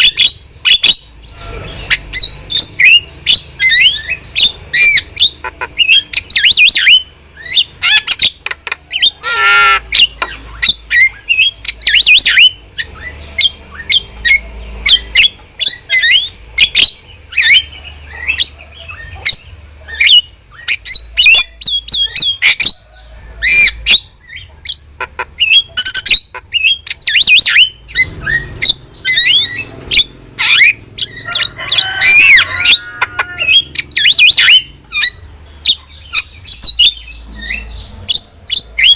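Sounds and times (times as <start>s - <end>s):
harsh bird call: 0.0s - 38.9s
starling chattering: 0.0s - 38.9s.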